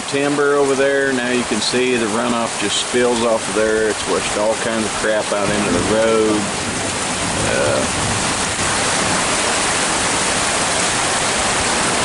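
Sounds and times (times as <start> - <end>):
heavy rain and hail: 0.0 - 12.0.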